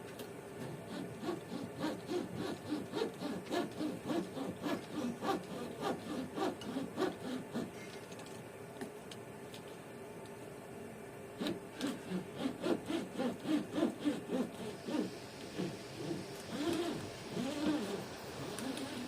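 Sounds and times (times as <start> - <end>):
cutting string rubbing strokes: 0.9 - 7.7, 11.4 - 17.9.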